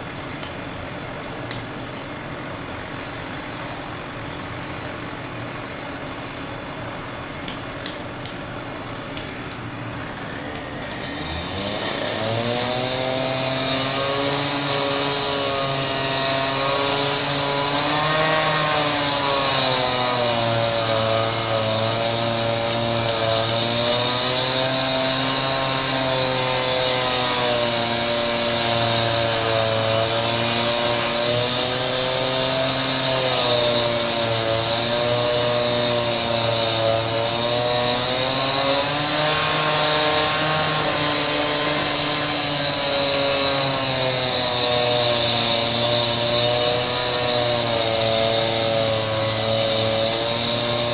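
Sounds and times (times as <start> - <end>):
concrete saw cutting stone: 10.0 - 50.9.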